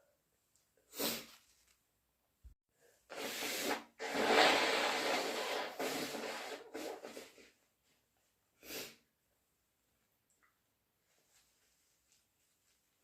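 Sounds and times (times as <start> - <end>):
person blowing nose: 0.9 - 1.5, 3.1 - 7.6, 8.6 - 9.0.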